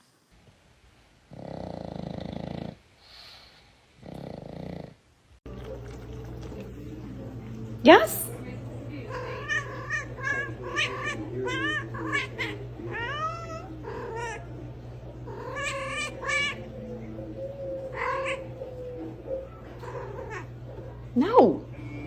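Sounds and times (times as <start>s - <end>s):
cat meowing: 9.1s - 14.6s, 15.3s - 16.8s, 17.7s - 19.2s, 19.8s - 20.5s.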